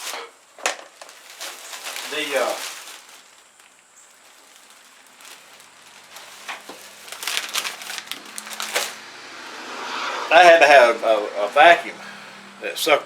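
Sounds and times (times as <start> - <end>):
crinkling and crackling: 0.0 - 9.1.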